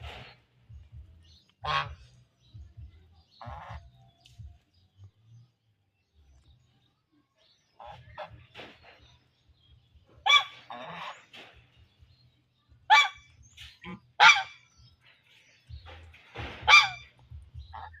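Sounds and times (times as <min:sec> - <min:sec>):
goose honking: 0:01.6 - 0:02.1, 0:03.4 - 0:03.9, 0:10.2 - 0:11.4, 0:12.9 - 0:14.6, 0:16.6 - 0:18.0.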